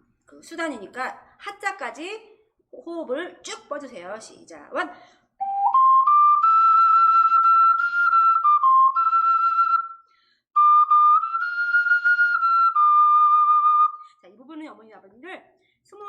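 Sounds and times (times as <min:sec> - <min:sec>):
ocarina melody: 0:05.4 - 0:14.1.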